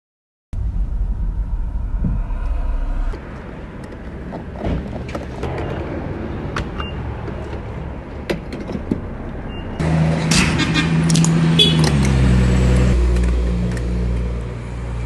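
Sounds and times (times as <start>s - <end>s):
low rumble: 0.5s - 4.2s.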